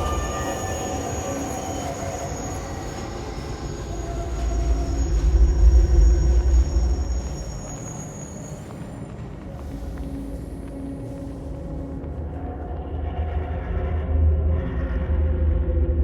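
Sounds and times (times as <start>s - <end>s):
high wheel squeal: 0.0s - 9.3s
subway train rumbling: 0.0s - 16.0s.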